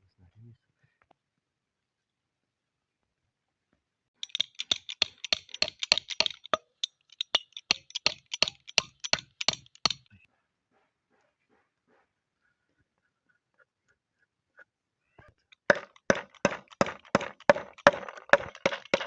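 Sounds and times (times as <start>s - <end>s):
sharp taps: 4.2s - 10.1s, 15.6s - 19.0s.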